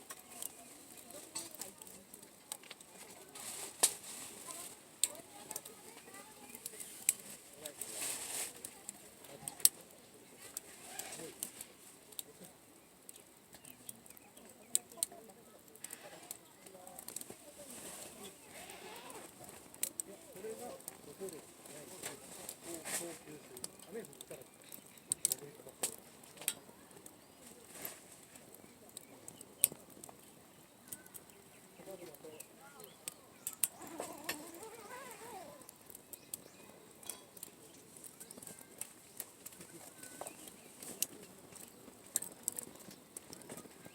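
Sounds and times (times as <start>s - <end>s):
sharp snaps and pops: 0.0s - 43.9s
wood fire crackling: 0.0s - 43.9s.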